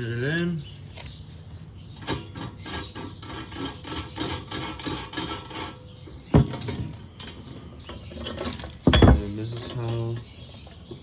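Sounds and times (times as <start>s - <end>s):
metal threads rasping: 2.0s - 10.4s.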